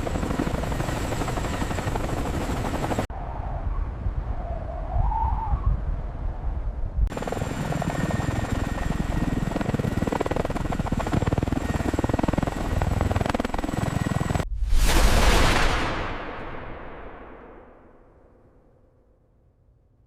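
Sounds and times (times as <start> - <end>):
helicopter rotor and turbine: 0.0 - 3.1, 7.1 - 14.5
loud rushing whoosh: 14.4 - 18.4
low rumble: 14.4 - 18.8.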